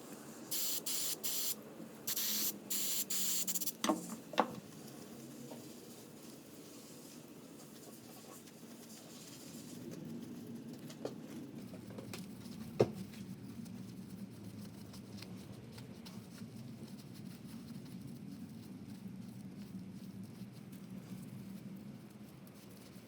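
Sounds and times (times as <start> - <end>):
faint scratching and tapping of parts: 7.0 - 23.0.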